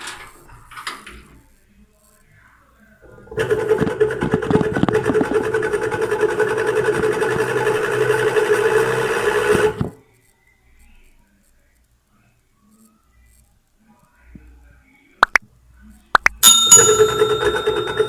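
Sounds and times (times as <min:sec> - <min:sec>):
washing machine motor rattling: 0:03.1 - 0:10.0, 0:16.4 - 0:18.0.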